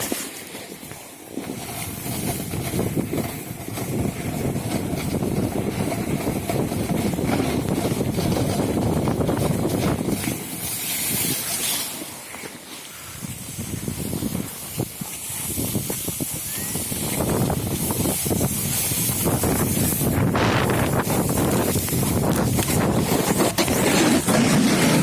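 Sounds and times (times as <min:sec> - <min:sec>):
snowboard scraping over snow: 0:00.0 - 0:25.0
sprayed snow hissing: 0:09.4 - 0:25.0.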